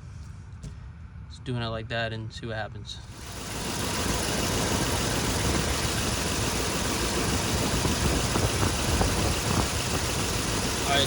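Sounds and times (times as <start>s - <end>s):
misfiring engine idling: 3.1s - 11.0s.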